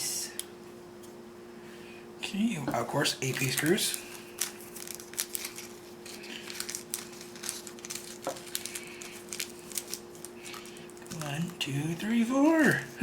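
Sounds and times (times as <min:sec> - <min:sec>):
faint steady hum: 0:00.0 - 0:13.0
plastic bag rustling: 0:02.7 - 0:13.0.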